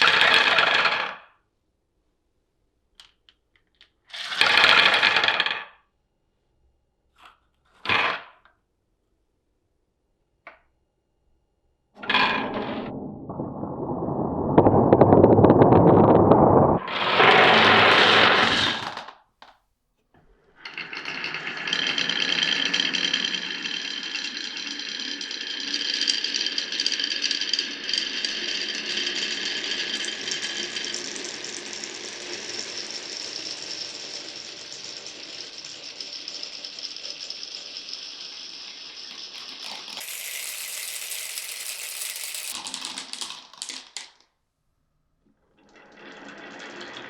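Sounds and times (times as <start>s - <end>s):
marbles rolling through wooden run: 12.0s - 19.1s, 20.6s - 44.2s, 45.4s - 47.0s.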